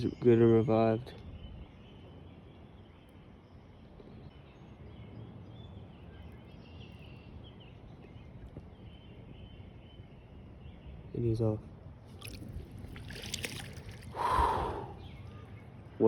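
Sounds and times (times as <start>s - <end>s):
faint creekside background noise: 0.0s - 16.0s.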